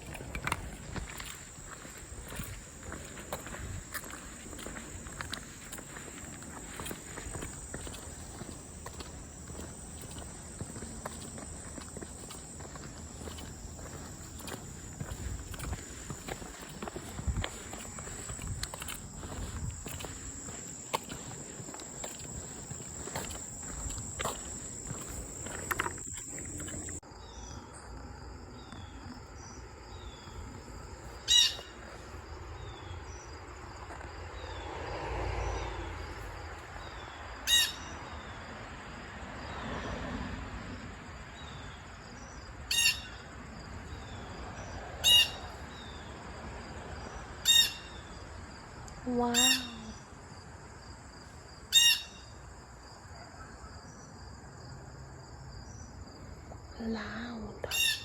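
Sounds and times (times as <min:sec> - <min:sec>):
insects buzzing: 0:00.0 - 0:37.4
insect chirps: 0:00.0 - 0:39.8, 0:40.5 - 0:58.0
passing vehicle rumble: 0:34.1 - 0:41.4.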